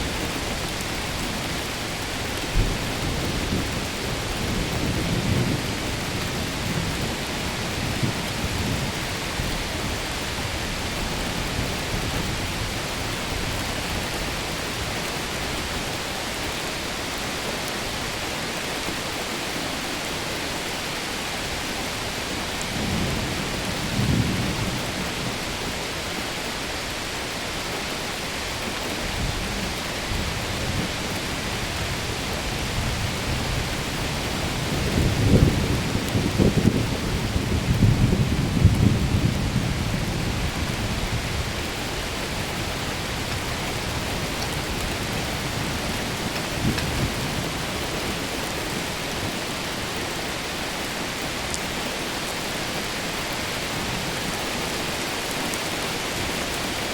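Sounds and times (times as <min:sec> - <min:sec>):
thunder rumbling: 0:00.0 - 0:16.3, 0:28.4 - 0:51.8
rain hissing: 0:00.0 - 0:56.9.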